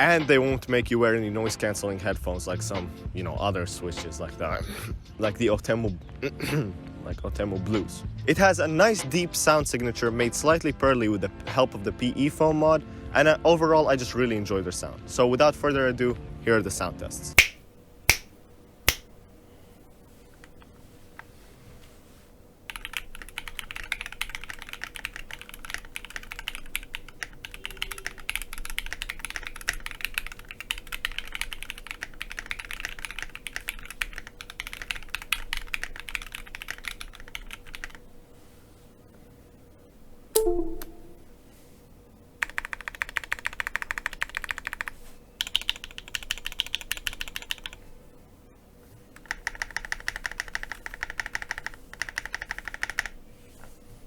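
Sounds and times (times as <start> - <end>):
mechanical keyboard key clacks: 22.7 - 38.0, 49.2 - 53.2.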